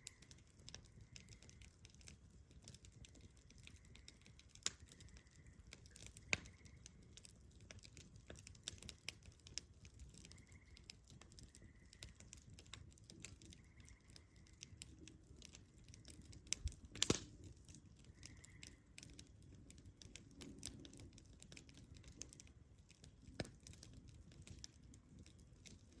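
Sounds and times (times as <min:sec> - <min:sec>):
wood fire crackling and popping: 0:00.0 - 0:26.0.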